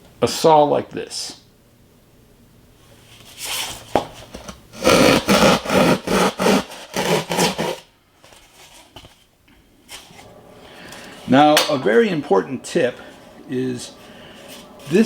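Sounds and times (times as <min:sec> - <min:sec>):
hand saw cutting foam board: 0:04.4 - 0:07.9.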